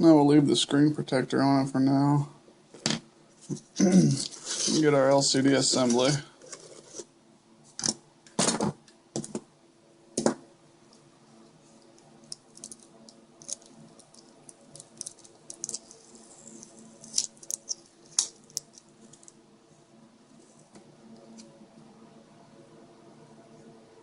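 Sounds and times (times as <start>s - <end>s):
faint steady hum: 0.0s - 24.0s
plastic parts clicking and tapping: 12.3s - 15.9s.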